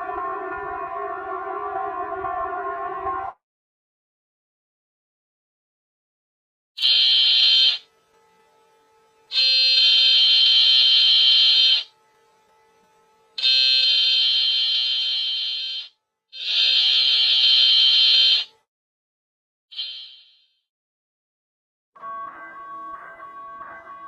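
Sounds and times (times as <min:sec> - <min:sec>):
high electronic alarm tone: 0:00.0 - 0:03.4, 0:06.8 - 0:18.7, 0:19.7 - 0:20.5.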